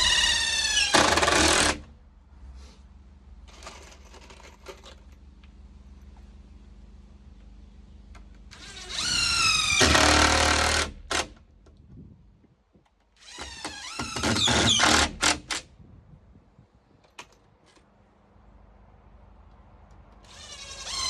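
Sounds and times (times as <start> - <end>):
power drill boring into wood: 0.0 - 1.8, 8.6 - 11.3, 13.2 - 15.5.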